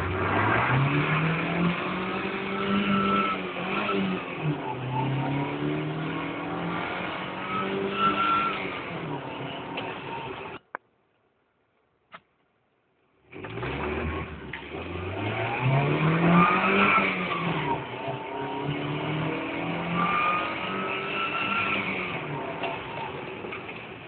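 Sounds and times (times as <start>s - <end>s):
car engine accelerating hard: 0.0s - 10.6s, 13.2s - 24.0s.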